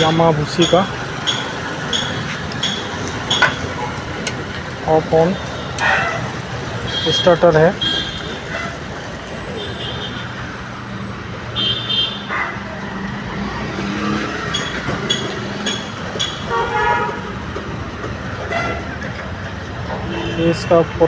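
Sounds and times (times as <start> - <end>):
steady engine hum: 0.0 - 21.0
vehicle horn toots: 6.9 - 8.8, 11.6 - 12.5, 16.3 - 17.4, 20.0 - 20.8.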